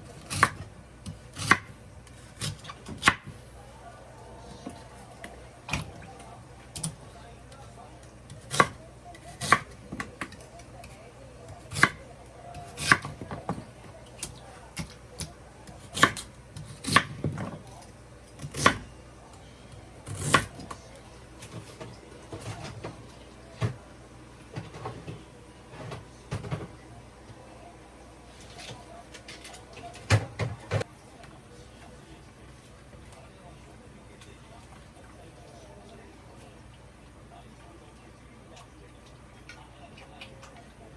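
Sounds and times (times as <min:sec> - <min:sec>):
knife cutting on a cutting board: 0:00.0 - 0:03.3, 0:12.6 - 0:13.6, 0:14.2 - 0:17.6, 0:20.0 - 0:20.7.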